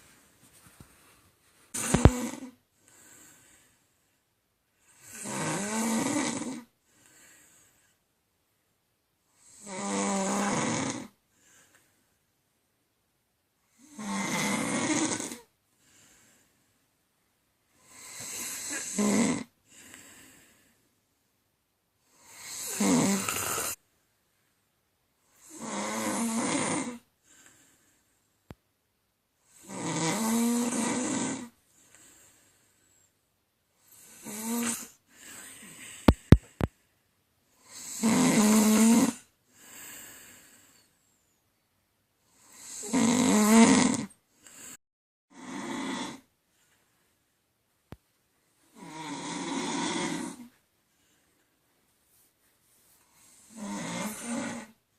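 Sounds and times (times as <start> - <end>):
quiet breathing: 0.0 - 5.2, 6.6 - 8.4, 11.0 - 12.5, 15.4 - 21.4, 27.0 - 28.6, 31.4 - 37.7, 39.2 - 41.6, 44.2 - 44.8, 46.1 - 54.9
woman snoring: 1.7 - 2.6, 4.9 - 6.7, 9.4 - 11.2, 13.7 - 15.5, 17.8 - 20.0, 22.1 - 23.8, 25.3 - 27.1, 29.5 - 31.6, 33.8 - 36.5, 37.6 - 40.0, 42.3 - 46.3, 48.7 - 50.6, 53.2 - 54.8.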